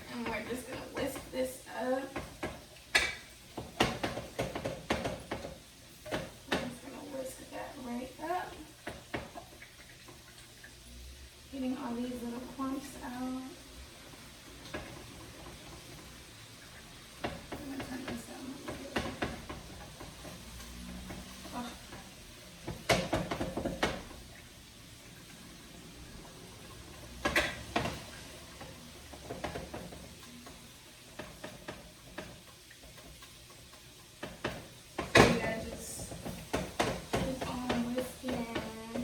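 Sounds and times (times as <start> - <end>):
kitchen utensils clattering: 0.0 - 10.6, 14.0 - 39.0
whisk scraping in a saucepan: 11.7 - 39.0.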